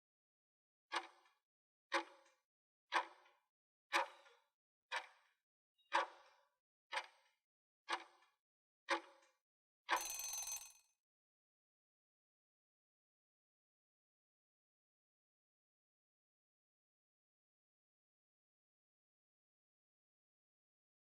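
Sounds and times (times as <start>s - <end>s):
short ringing end signal: 9.9s - 10.8s.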